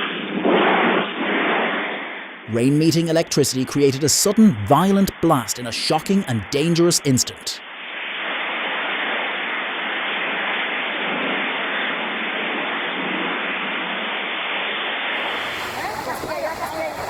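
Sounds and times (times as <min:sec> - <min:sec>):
heavy rain falling: 0:15.2 - 0:17.0.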